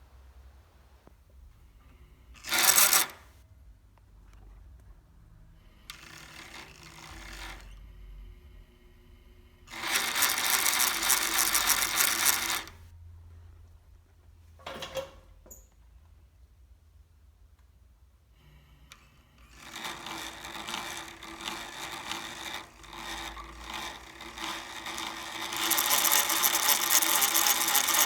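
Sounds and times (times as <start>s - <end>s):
faint motor hum: 0.0s - 14.0s, 18.3s - 28.0s
sewing machine rattling: 2.4s - 3.3s, 5.9s - 7.8s, 9.7s - 12.8s, 19.4s - 28.0s.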